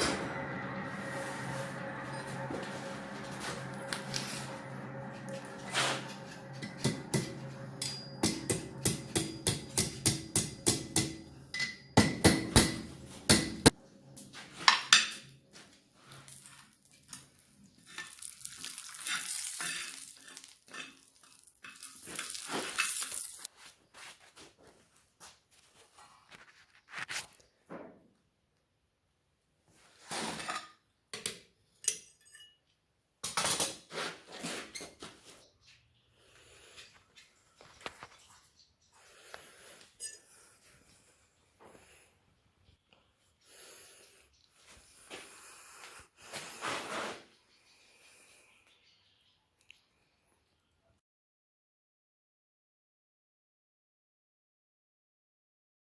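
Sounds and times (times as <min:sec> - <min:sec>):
hammer striking steel on anvil: 0:00.0 - 0:13.8
metal clinks and knocks: 0:06.6 - 0:13.7.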